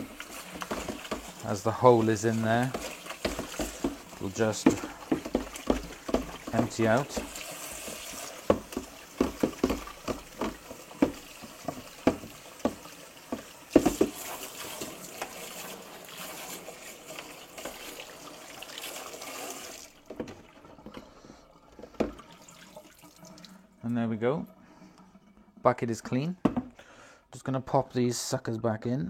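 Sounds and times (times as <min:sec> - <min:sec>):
bucket knocks and clicks: 0:00.0 - 0:15.4, 0:21.8 - 0:22.3, 0:26.4 - 0:26.8
water trickling from bucket: 0:00.0 - 0:25.8.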